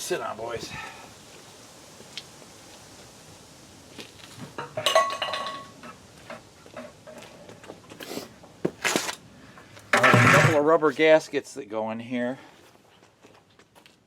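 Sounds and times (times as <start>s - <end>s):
metal tools clinking and clanking: 4.6s - 5.7s.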